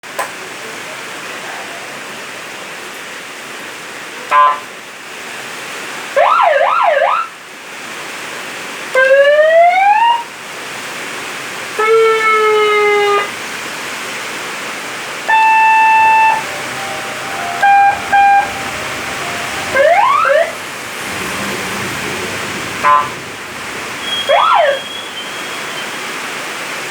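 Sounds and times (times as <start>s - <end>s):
electronic horn siren patterns: 4.3s - 4.7s, 11.8s - 13.4s, 15.3s - 25.7s
steady hiss: 15.3s - 26.8s.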